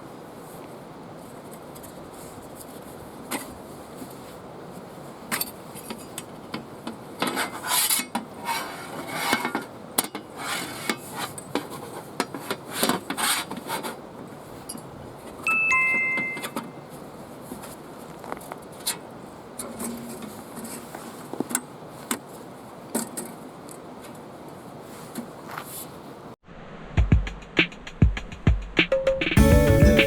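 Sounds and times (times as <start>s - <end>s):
two-note beep: 15.5s - 16.8s.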